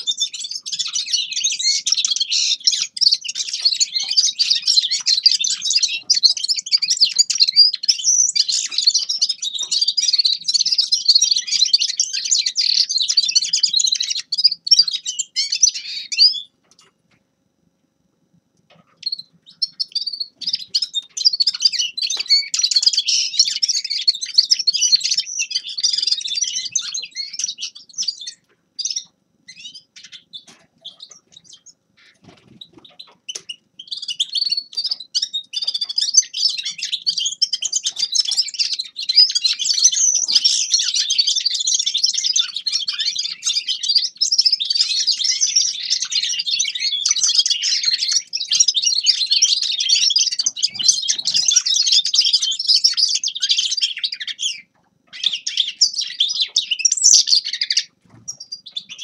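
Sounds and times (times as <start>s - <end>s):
finch twittering song: 0.0s - 16.9s, 18.7s - 59.0s
scattered bird chirps: 0.0s - 16.9s, 18.7s - 59.0s.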